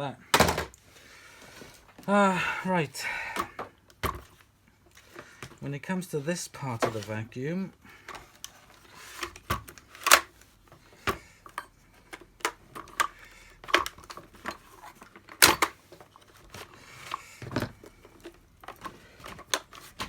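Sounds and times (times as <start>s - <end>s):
plastic parts clicking and knocking: 0.3s - 0.8s, 3.3s - 5.6s, 8.0s - 20.0s.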